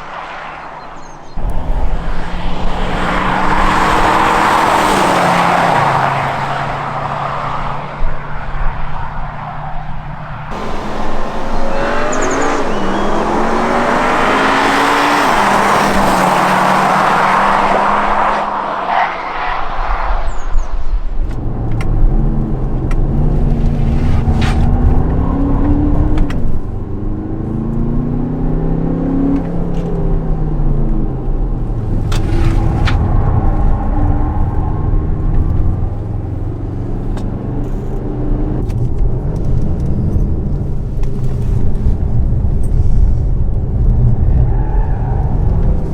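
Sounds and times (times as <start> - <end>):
car engine accelerating: 1.3 - 20.1, 21.1 - 45.9
loud rushing noise: 10.5 - 21.2.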